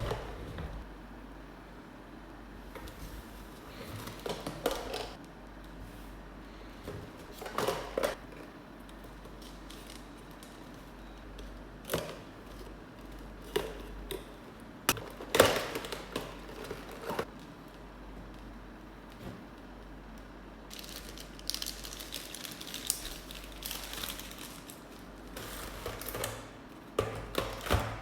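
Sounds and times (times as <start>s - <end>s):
toy packaging handled and opened: 20.7s - 26.5s.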